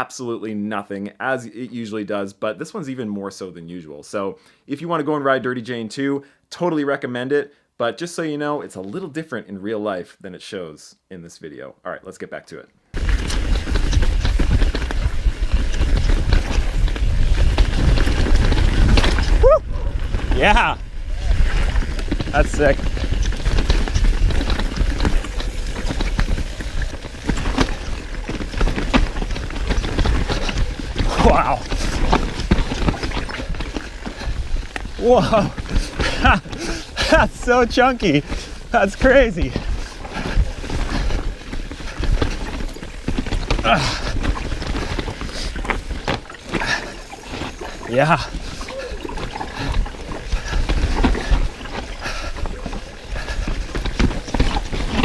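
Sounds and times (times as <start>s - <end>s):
bike rattling over rocks: 12.9s - 55.0s
wind rumble on microphone: 13.0s - 55.0s.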